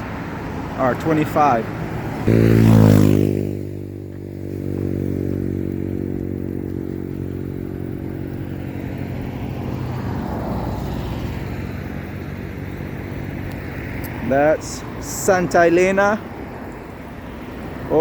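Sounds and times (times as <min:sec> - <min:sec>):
vehicle engine running at low revs: 0:00.0 - 0:18.0.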